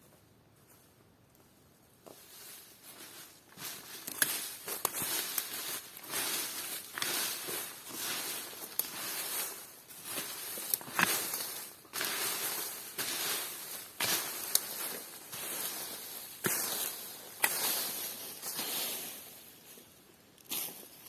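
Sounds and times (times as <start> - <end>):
footsteps crunching on forest floor: 0.0 - 21.0.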